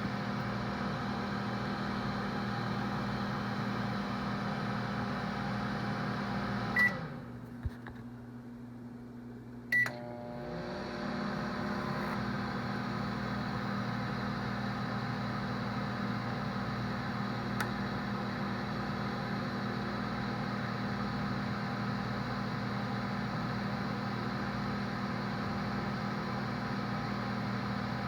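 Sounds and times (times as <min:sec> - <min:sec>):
microwave humming: 0:00.0 - 0:28.0
microwave beep: 0:06.6 - 0:07.2, 0:09.7 - 0:10.4.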